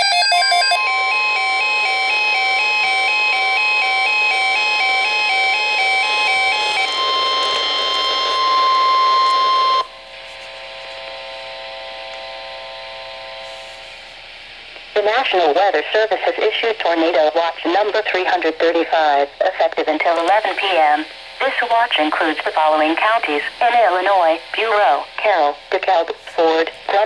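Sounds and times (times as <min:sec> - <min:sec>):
long steady alert tone: 0:00.0 - 0:09.9
quiet steady hum: 0:06.8 - 0:27.0.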